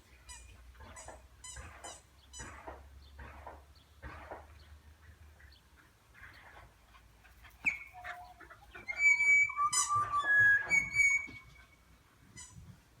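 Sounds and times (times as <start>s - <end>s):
songbird singing: 7.4s - 11.8s.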